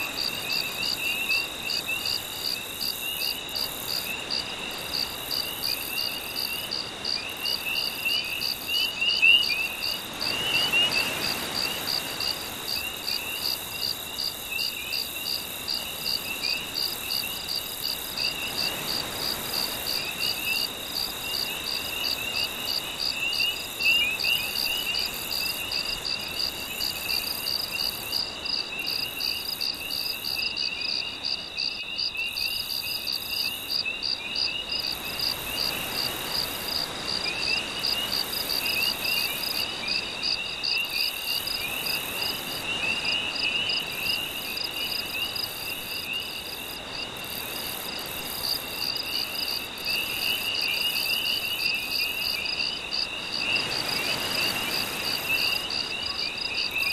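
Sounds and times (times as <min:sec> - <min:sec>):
crickets chirping: 0:00.0 - 0:56.9
gentle sea waves: 0:34.8 - 0:56.8.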